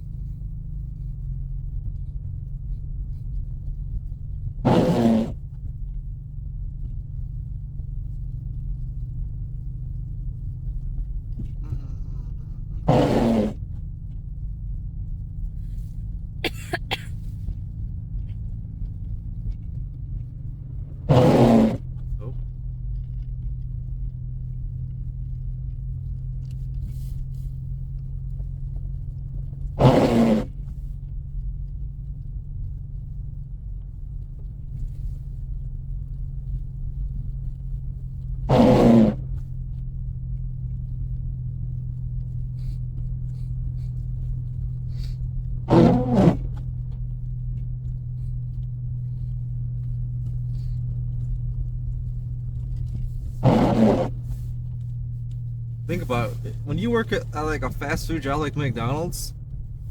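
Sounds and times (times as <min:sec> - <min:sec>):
car engine and tyres droning: 0:00.0 - 0:59.9.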